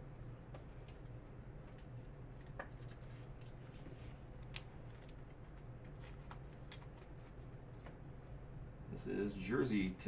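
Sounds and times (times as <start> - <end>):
steady low hum: 0.0 - 10.0
trading cards clicking and rustling: 1.7 - 3.6, 4.4 - 8.0.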